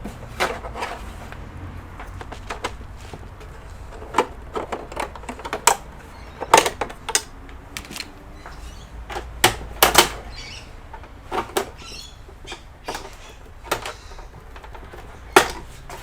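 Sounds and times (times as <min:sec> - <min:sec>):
plastic parts clicking and knocking: 0:02.0 - 0:10.3, 0:12.5 - 0:16.0.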